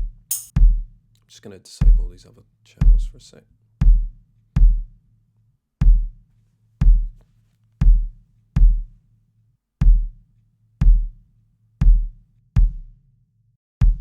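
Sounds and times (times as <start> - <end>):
kick drum hits: 0.0 - 0.9, 3.8 - 4.9, 5.8 - 6.2, 6.8 - 7.2, 7.8 - 8.9, 9.8 - 10.2, 10.8 - 11.2, 11.8 - 12.9
background noise: 0.0 - 12.4.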